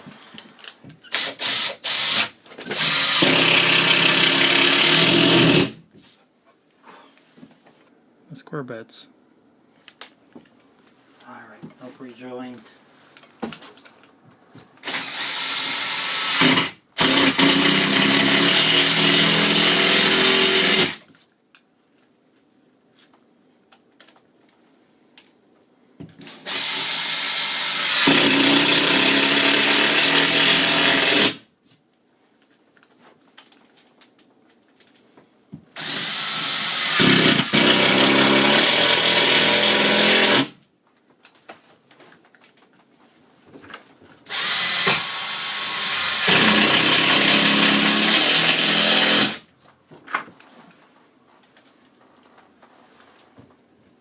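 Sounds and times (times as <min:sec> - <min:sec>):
impact driver driving screws: 0:00.6 - 0:05.8, 0:14.8 - 0:21.1, 0:26.2 - 0:31.4, 0:35.8 - 0:40.6, 0:44.3 - 0:49.4.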